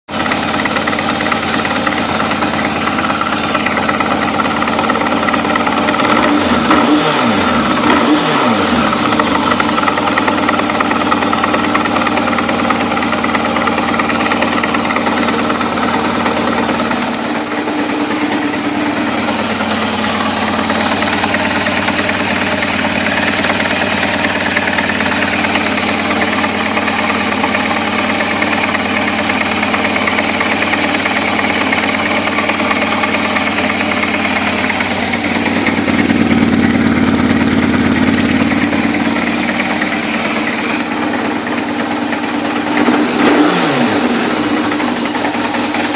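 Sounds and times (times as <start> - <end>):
motorcycle engine running: 0.1 - 45.9.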